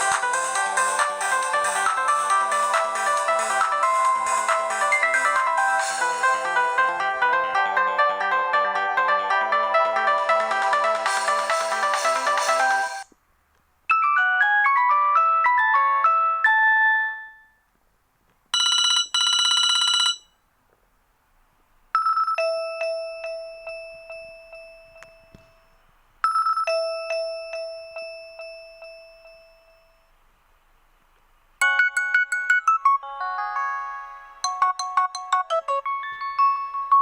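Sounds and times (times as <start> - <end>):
fast bright melody: 0.0 - 13.0
ringtone melody: 0.0 - 13.1, 13.9 - 17.6, 18.6 - 20.2, 22.0 - 25.7, 26.3 - 30.0, 31.6 - 37.0
buzzing phone ring: 18.6 - 20.4, 26.3 - 27.0
bell-like chime: 26.4 - 30.1, 36.0 - 37.0.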